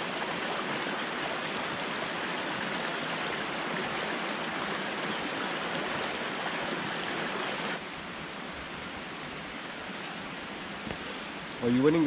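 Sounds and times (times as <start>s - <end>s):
rush of flowing water: 0.0s - 12.0s.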